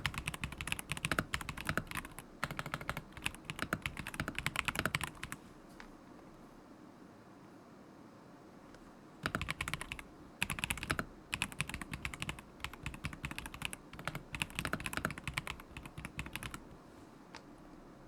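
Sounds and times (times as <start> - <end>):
mechanical keyboard typing: 0.0 - 5.4, 9.2 - 16.8.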